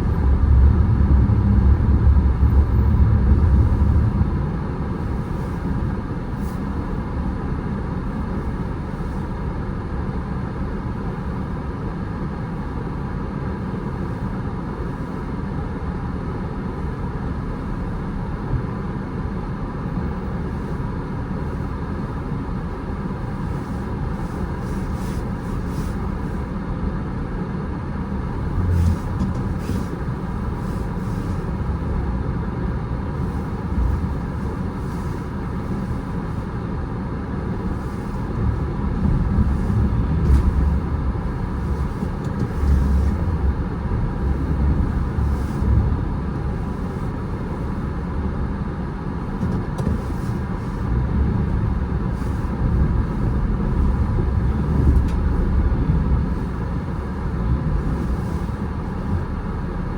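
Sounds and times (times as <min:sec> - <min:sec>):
low thumps: 0:00.0 - 0:05.2
car road and engine rumble: 0:00.0 - 0:59.9.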